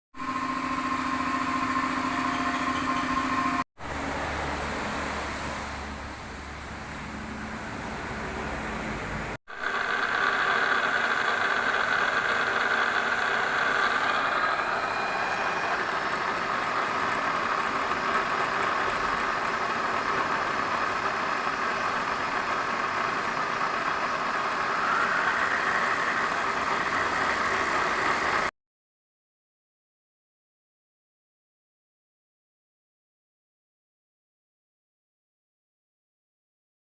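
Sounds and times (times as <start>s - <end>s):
machine whining hiss: 9.5s - 28.5s.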